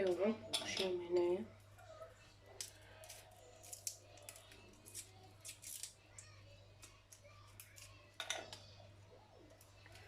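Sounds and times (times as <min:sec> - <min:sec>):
garlic skins crackling: 0:02.6 - 0:06.0.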